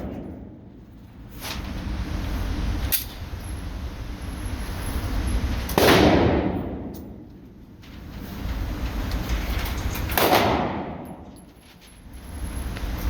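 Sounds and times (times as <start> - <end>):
low rumble of range noise: 0.0 - 13.0
handgun shots echoing: 5.7 - 7.1, 10.2 - 11.2.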